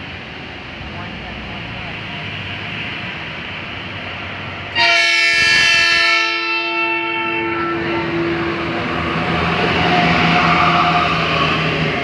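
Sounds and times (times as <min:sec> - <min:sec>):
traffic noise: 0:00.0 - 0:12.0
multi-tone bus air horn: 0:04.8 - 0:08.6.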